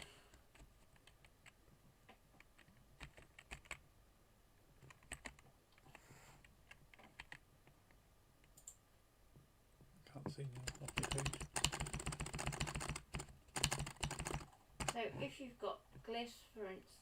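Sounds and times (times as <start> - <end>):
typing on computer keyboard: 2.4 - 3.8, 4.8 - 6.0, 6.6 - 7.4, 8.4 - 8.8, 10.5 - 15.0.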